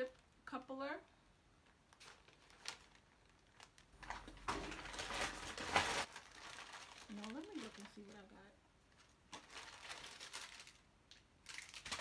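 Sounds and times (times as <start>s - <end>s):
packaging rustling: 1.6s - 8.3s, 8.9s - 12.0s.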